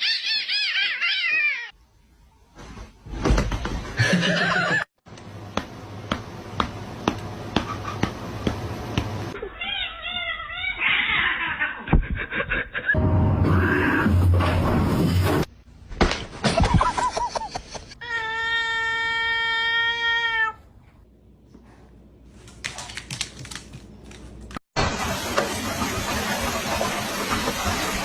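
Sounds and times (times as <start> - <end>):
cat meowing and yowling: 0.0 - 1.7, 9.4 - 11.8.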